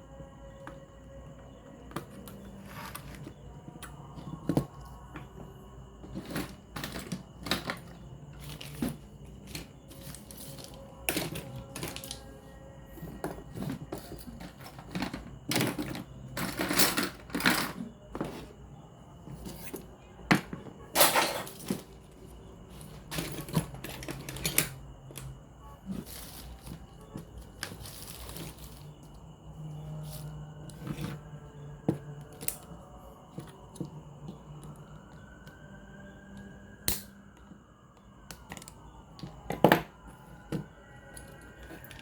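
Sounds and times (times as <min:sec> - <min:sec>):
tools clicking on plastic casing: 0:09.5 - 0:12.2.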